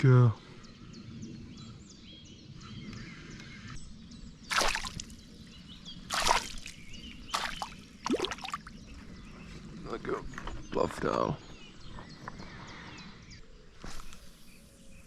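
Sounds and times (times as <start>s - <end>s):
water splashing: 4.5s - 5.2s, 6.1s - 8.8s.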